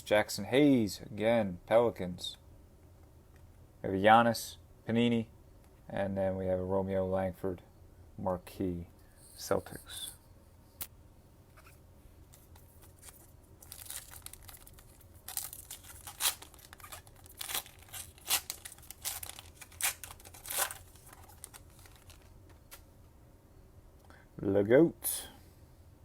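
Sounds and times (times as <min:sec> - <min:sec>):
card pack wrapper tearing: 0:12.3 - 0:22.3.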